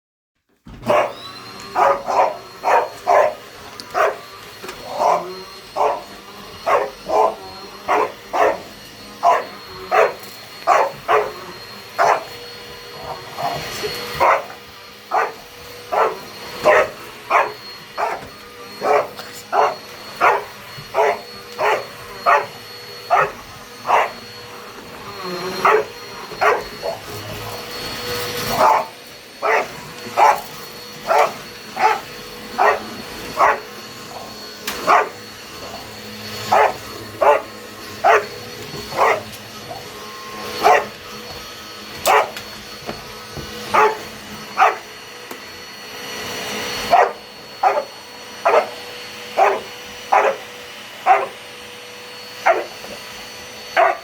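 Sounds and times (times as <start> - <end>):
vacuum cleaner humming: 0.5 - 54.0
dog barking: 0.8 - 11.4, 12.0 - 12.4, 13.0 - 24.2, 25.6 - 27.1, 28.5 - 35.2, 36.4 - 39.8, 40.6 - 41.0, 42.0 - 42.4, 43.7 - 44.9, 46.8 - 48.8, 49.4 - 51.4, 52.4 - 52.9, 53.8 - 54.0.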